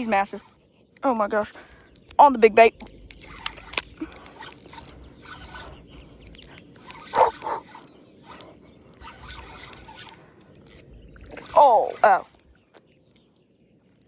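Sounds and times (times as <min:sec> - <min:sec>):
fishing reel and line handling: 0:00.0 - 0:13.3.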